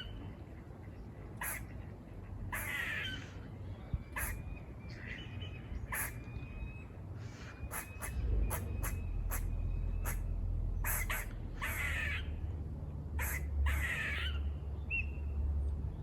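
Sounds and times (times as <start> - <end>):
squirrel barking calls: 1.4 - 1.7, 2.5 - 3.3, 4.1 - 4.4, 5.8 - 6.2, 7.3 - 12.4, 13.2 - 15.0.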